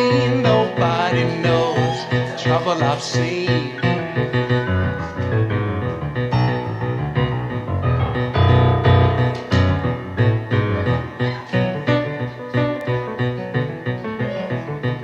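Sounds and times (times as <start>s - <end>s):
piano: 0.0s - 15.0s
strong bass line: 3.6s - 12.1s.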